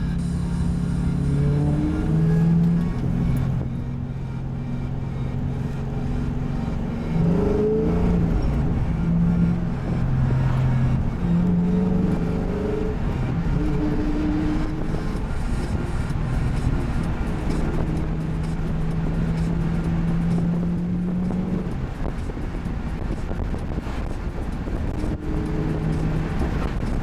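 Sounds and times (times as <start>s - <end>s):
car engine droning while driving: 0.0s - 27.0s.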